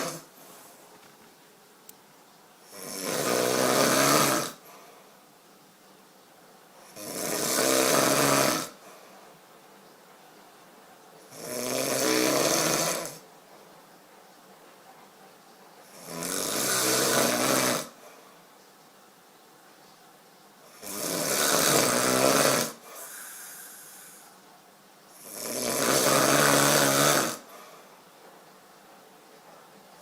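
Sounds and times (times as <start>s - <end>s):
person snoring: 0.0s - 0.3s, 2.7s - 4.7s, 6.9s - 8.8s, 11.3s - 13.2s, 15.9s - 18.0s, 20.7s - 24.4s, 25.2s - 27.8s
quiet breathing: 4.5s - 5.6s, 8.7s - 11.1s, 17.8s - 18.9s, 22.7s - 25.3s, 27.4s - 30.0s.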